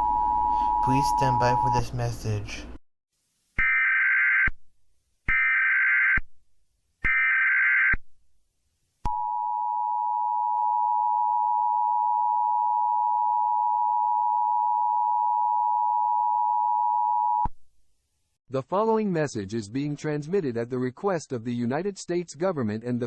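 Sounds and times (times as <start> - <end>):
two-tone attention signal: 0.0 - 2.5.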